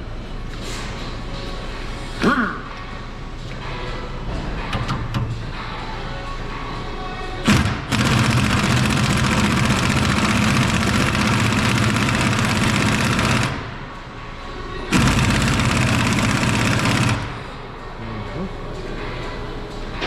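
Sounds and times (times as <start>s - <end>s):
impact wrench rattling: 7.5s - 13.6s.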